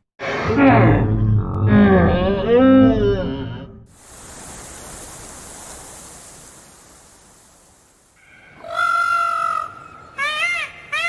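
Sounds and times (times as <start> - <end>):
high-pitched animal call: 0.2 - 3.8
breathy hiss: 3.9 - 9.5.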